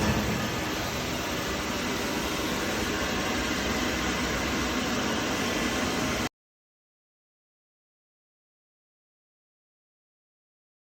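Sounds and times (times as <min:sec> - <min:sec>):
machine hum and hiss: 0:00.0 - 0:06.3.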